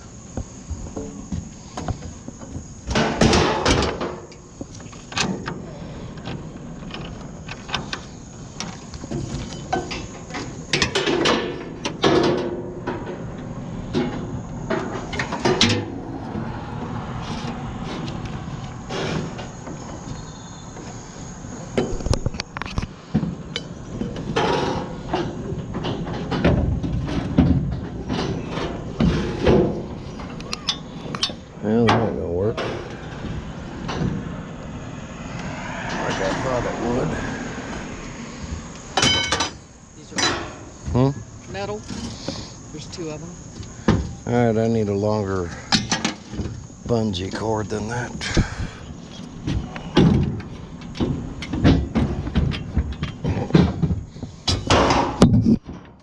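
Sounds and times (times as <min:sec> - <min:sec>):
crickets chirring: 0:00.0 - 0:56.0
scrap metal clanking: 0:23.1 - 0:40.7.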